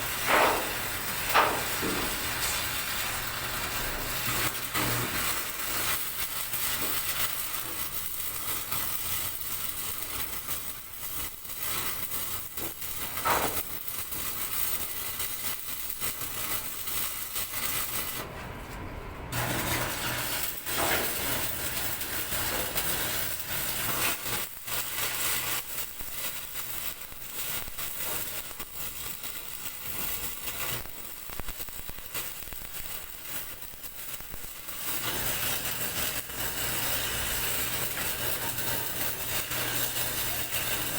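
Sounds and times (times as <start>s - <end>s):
arc welding crackling hiss: 0.0s - 18.3s, 19.3s - 40.9s.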